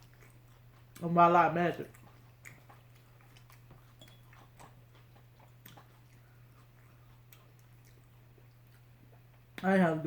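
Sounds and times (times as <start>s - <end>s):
steady low hum: 0.0s - 10.0s
mouth chewing clicks: 1.8s - 9.6s.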